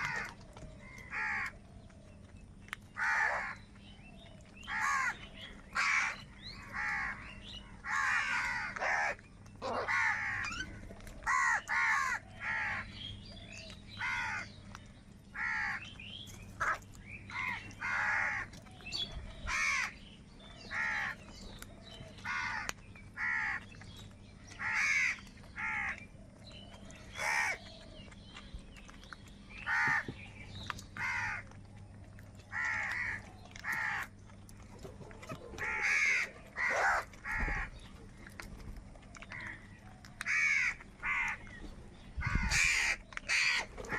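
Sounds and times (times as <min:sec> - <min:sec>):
crows cawing: 0:00.0 - 0:01.6, 0:03.0 - 0:03.6, 0:04.6 - 0:13.0, 0:14.0 - 0:14.6, 0:15.3 - 0:15.8, 0:16.6 - 0:18.6, 0:19.5 - 0:20.0, 0:20.7 - 0:21.2, 0:22.2 - 0:23.6, 0:24.6 - 0:26.0, 0:27.2 - 0:27.7, 0:29.6 - 0:30.1, 0:31.0 - 0:31.5, 0:32.5 - 0:34.1, 0:35.6 - 0:37.8, 0:40.2 - 0:41.4, 0:42.2 - 0:43.9.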